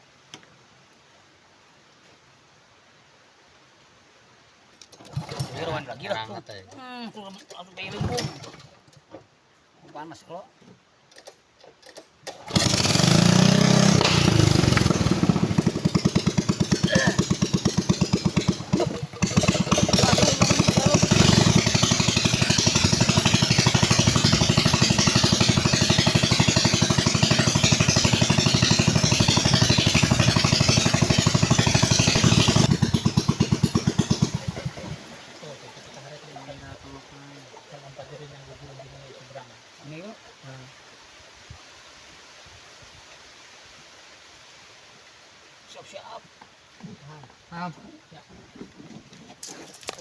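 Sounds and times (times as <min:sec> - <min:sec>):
small boat engine chugging: 0:12.4 - 0:39.3.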